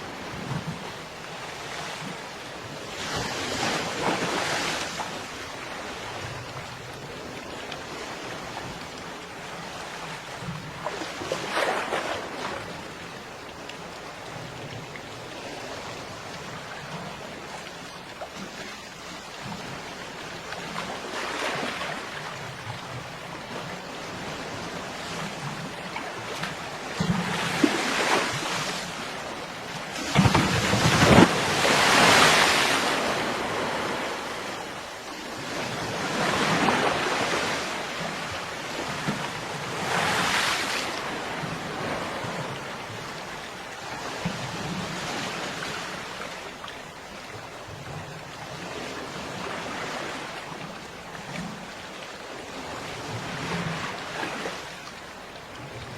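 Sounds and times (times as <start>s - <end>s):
waves breaking on beach: 0.0s - 55.9s
steady surf wash: 23.0s - 46.7s.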